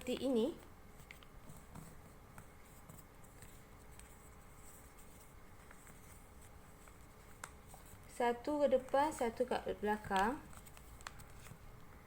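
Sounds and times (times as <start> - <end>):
paper rustling and crinkling: 0.9 - 8.2, 8.8 - 12.0.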